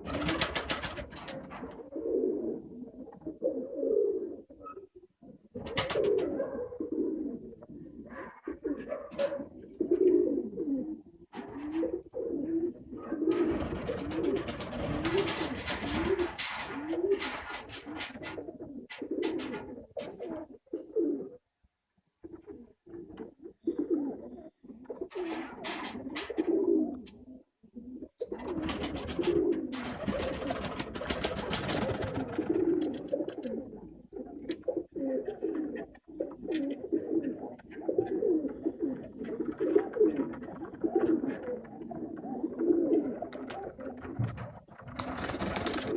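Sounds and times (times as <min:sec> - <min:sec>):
pigeons cooing: 0:00.0 - 0:21.4, 0:22.2 - 0:45.9
rustling noise: 0:13.3 - 0:18.4.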